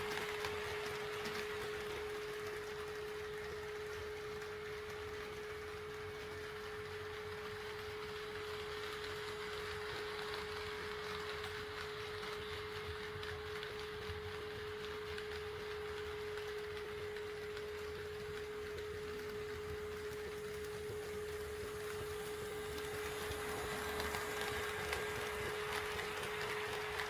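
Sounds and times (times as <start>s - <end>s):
model train running on track: 0.0s - 27.0s.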